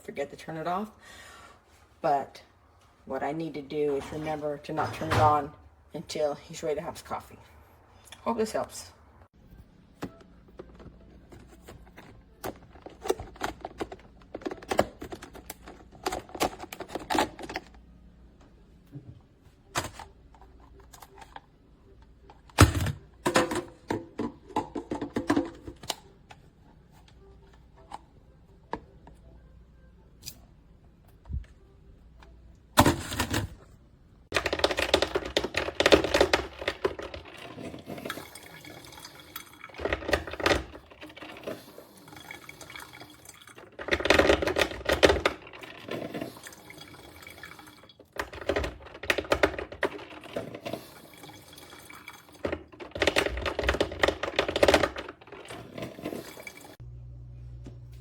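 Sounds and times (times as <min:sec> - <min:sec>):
coffee maker water gurgling: 0:37.3 - 0:48.6, 0:50.2 - 0:53.4, 0:55.5 - 0:56.8.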